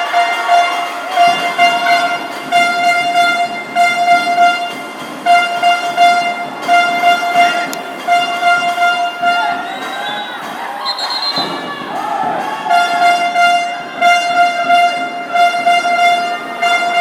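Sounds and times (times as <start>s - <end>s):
hand-held horn blasts: 0.0s - 11.6s, 12.7s - 17.0s.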